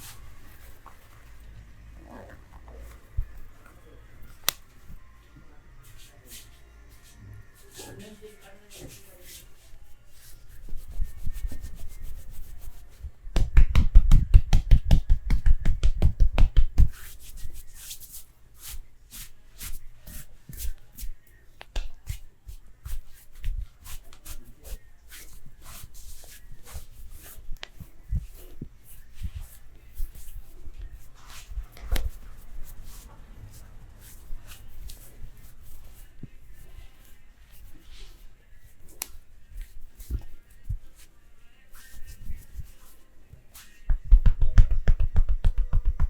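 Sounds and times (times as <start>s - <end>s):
hands rubbing skin: 0.0s - 1.6s, 2.2s - 5.0s, 5.8s - 46.0s
sharp clicks and slaps: 13.3s - 16.9s, 43.9s - 46.0s
percussive hand strikes: 13.3s - 17.0s, 43.9s - 46.0s.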